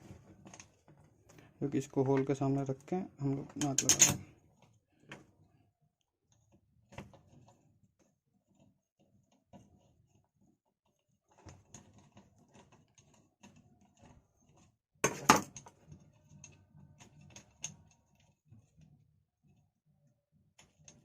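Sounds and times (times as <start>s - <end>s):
metal parts clattering: 3.6s - 4.3s.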